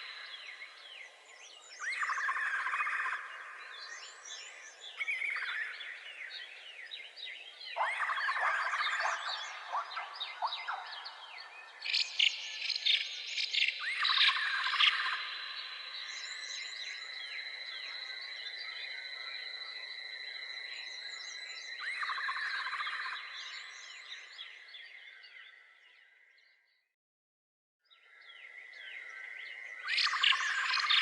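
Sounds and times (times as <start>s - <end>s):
songbirds chirping: 0.0s - 26.9s, 27.8s - 31.0s.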